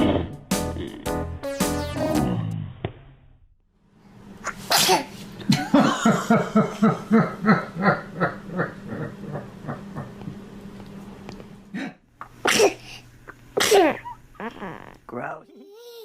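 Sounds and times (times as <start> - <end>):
rhythmic laughter: 0.0 - 2.3, 5.4 - 10.4
person sneezing: 4.5 - 5.2, 11.8 - 13.0, 13.6 - 14.8.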